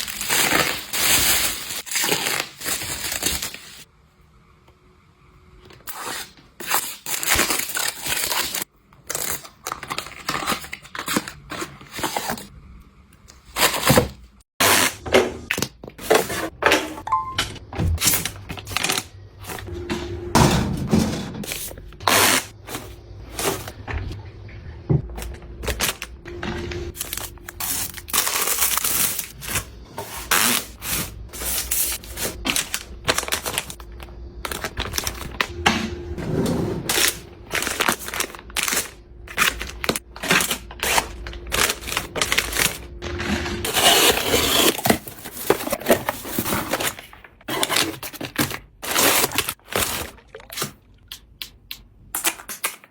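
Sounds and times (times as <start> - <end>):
plastic crinkling: 0.0 - 3.8, 26.9 - 35.5, 36.9 - 43.0.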